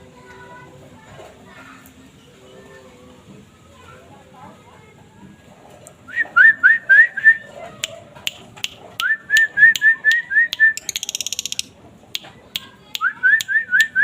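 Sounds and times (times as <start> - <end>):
sharp bird clicks: 7.8 - 14.0
bird singing whistled notes: 9.0 - 11.7.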